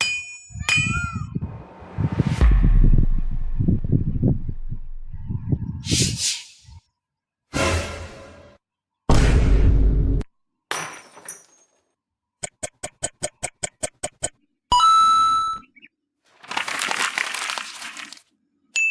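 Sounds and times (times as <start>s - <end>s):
heavy boom-like impact: 1.5s - 5.1s
short crash: 1.6s - 4.3s
series of clicks: 12.4s - 14.4s.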